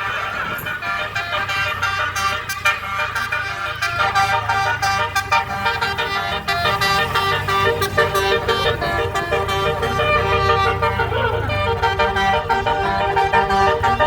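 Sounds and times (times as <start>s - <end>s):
engine humming: 0.0s - 14.0s
musical air horns playing a tune: 0.0s - 14.0s.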